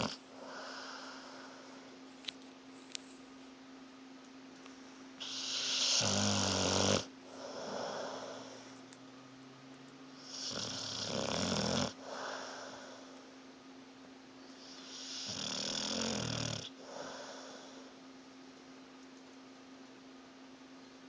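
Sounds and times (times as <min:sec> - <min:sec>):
dog snoring: 0:00.0 - 0:01.2, 0:05.2 - 0:08.7, 0:10.2 - 0:13.1, 0:14.6 - 0:17.8
soft breath out: 0:00.4 - 0:02.0, 0:07.3 - 0:08.8, 0:12.0 - 0:13.3, 0:16.8 - 0:18.0.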